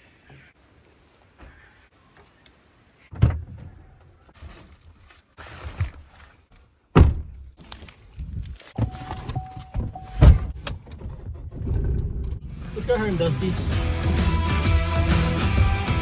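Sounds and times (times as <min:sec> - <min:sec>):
rustling and handling: 0:04.1 - 0:06.9, 0:07.5 - 0:10.6
car door shutting: 0:08.8 - 0:12.0.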